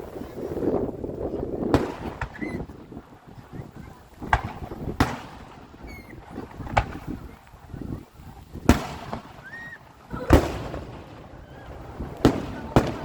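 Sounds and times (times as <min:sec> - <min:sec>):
fireworks shells bursting: 0:08.6 - 0:13.0.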